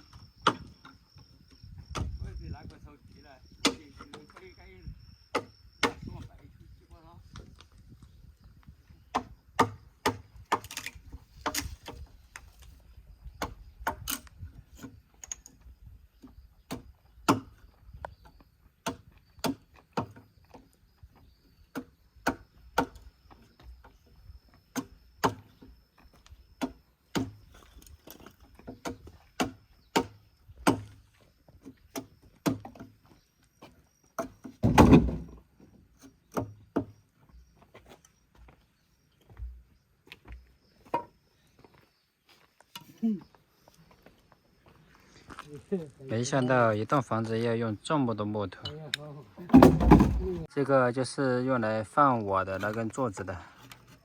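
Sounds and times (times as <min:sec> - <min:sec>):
sharp wooden knocks: 0:00.4 - 0:00.7, 0:05.3 - 0:06.2, 0:09.1 - 0:12.0, 0:21.7 - 0:23.1, 0:26.6 - 0:27.5, 0:28.6 - 0:31.0, 0:31.9 - 0:32.9, 0:34.2 - 0:35.4, 0:49.5 - 0:50.5
loud thump on timber: 0:34.6 - 0:35.4, 0:49.5 - 0:50.5.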